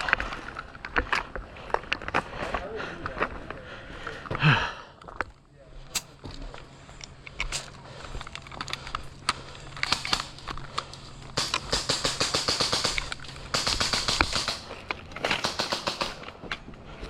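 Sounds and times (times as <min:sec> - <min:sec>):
airsoft guns firing: 0:09.8 - 0:16.5.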